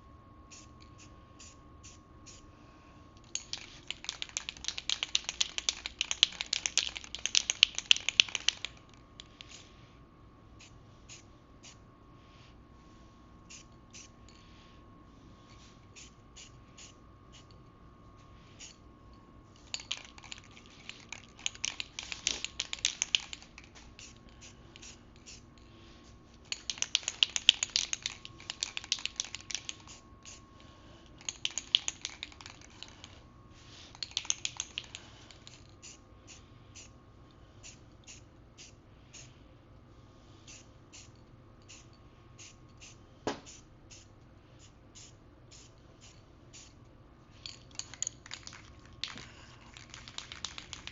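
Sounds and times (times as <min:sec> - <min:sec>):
spray paint can spraying: 0:03.4 - 0:08.8, 0:19.9 - 0:24.2, 0:26.6 - 0:30.4, 0:31.3 - 0:33.0, 0:34.0 - 0:34.9, 0:48.3 - 0:50.9.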